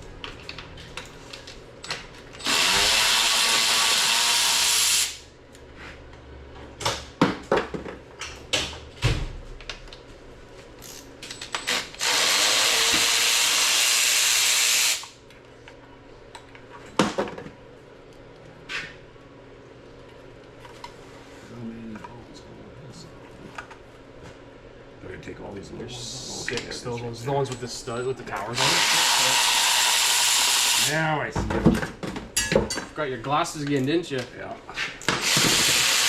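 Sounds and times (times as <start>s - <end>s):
power tool running: 2.4s - 5.2s, 11.7s - 15.2s, 28.5s - 31.0s, 35.1s - 36.0s.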